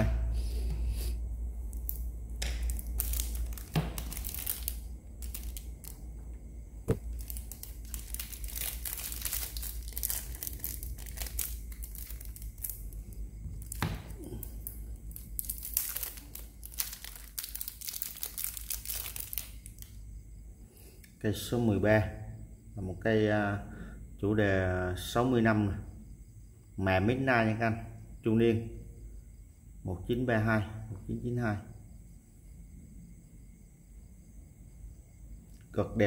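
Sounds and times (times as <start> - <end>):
packaging crinkling: 1.7 - 6.1, 6.9 - 20.0.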